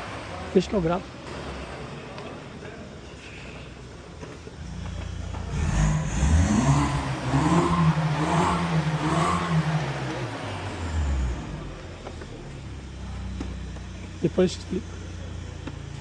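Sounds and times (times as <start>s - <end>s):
sports car engine revving: 4.5s - 16.0s.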